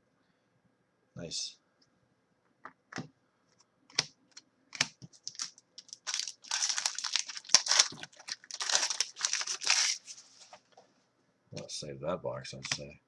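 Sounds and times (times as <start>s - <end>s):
card handling clicks and rustles: 3.9s - 10.2s
wrapper crinkling and tearing: 5.2s - 10.2s.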